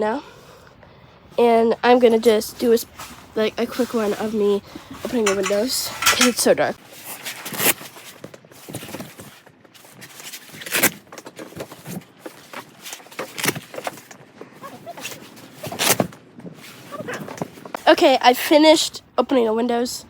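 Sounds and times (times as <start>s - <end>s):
fabric tent windows rustling: 2.2s - 14.1s.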